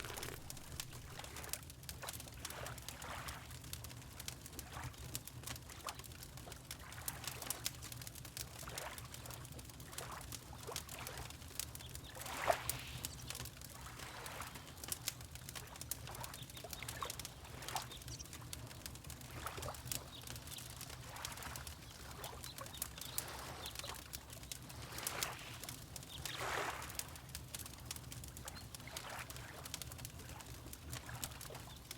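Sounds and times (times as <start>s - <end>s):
water lapping: 0.0s - 1.6s, 2.4s - 3.5s, 12.2s - 13.1s, 13.7s - 15.0s, 20.8s - 22.4s, 23.1s - 24.1s, 24.7s - 27.2s, 28.9s - 31.7s
wood fire crackling and popping: 0.0s - 31.9s.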